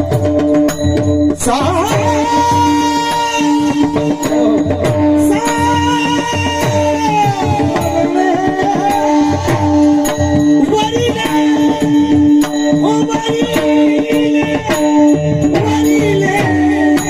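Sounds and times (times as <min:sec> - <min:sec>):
hand cymbals: 0:00.0 - 0:17.0
hand drum beating: 0:00.0 - 0:17.0.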